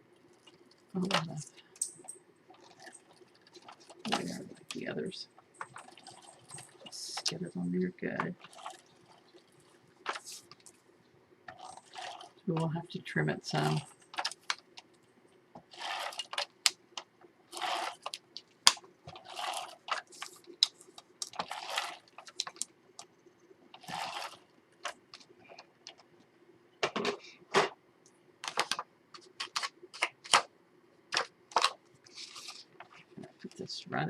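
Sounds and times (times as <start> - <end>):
paper rustling and sliding: 31.2 - 33.0.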